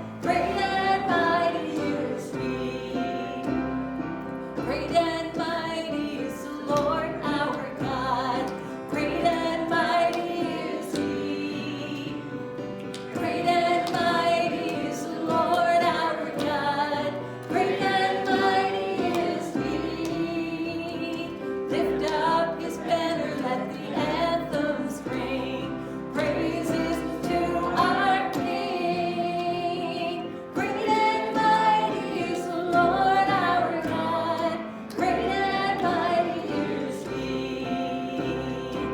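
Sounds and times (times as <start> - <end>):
congregation singing worship song: 0.0 - 38.9
musical accompaniment: 0.0 - 38.9.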